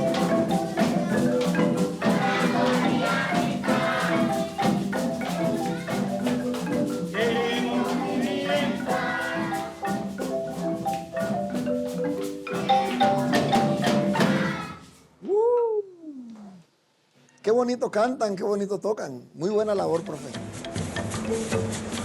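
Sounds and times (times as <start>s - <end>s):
voices singing: 0.0s - 10.4s, 12.5s - 15.0s
drum hits: 0.0s - 14.8s
marimba notes: 0.0s - 15.0s, 19.9s - 22.0s
shaker rhythm: 0.0s - 15.4s, 19.7s - 22.0s.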